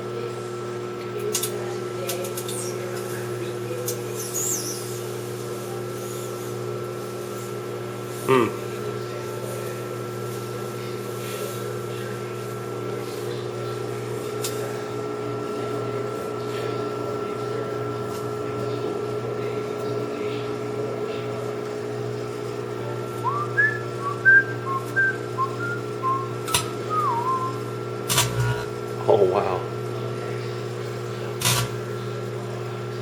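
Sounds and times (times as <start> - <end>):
microwave oven humming: 0.0 - 33.0
person whistling: 23.2 - 27.6.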